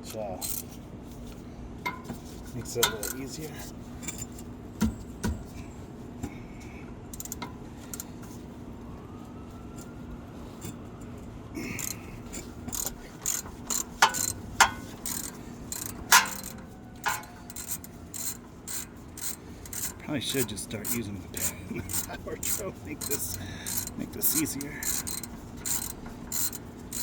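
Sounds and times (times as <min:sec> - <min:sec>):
ratchet wrench clicking: 0:02.6 - 0:04.5, 0:07.1 - 0:08.1, 0:11.8 - 0:27.0.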